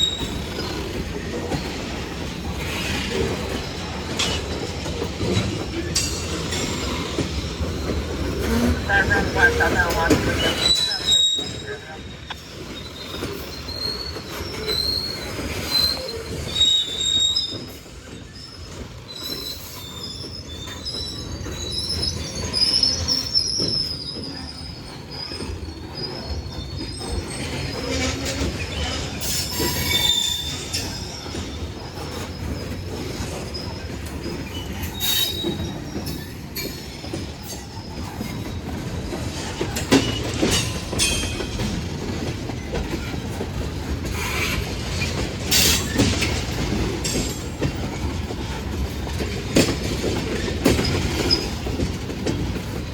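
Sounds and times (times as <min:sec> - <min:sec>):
freight train rumble: 0:00.0 - 0:52.9
steel wheels squealing on rail: 0:00.0 - 0:52.9
wheels clicking over rail joints: 0:12.3 - 0:52.9.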